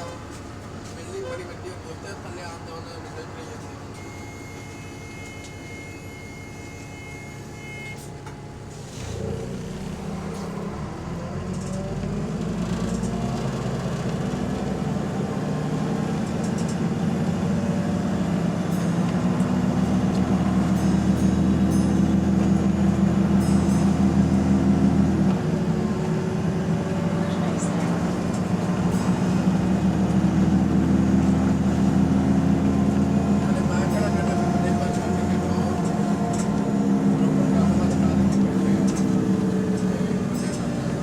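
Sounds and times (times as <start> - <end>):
bus diesel engine accelerating: 0.0 - 41.0
electronic beep tone: 4.0 - 8.0.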